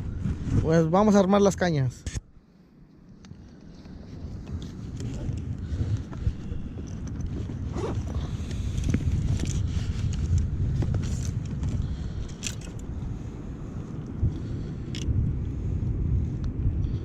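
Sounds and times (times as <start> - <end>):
steady low rumble: 0.0 - 17.0
fishing gear clicks and rustles: 3.3 - 13.0.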